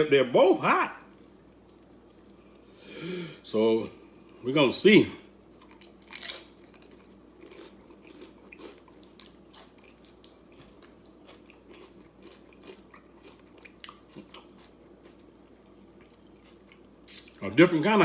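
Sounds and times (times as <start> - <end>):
person chewing crunchy chips: 5.5 - 17.4.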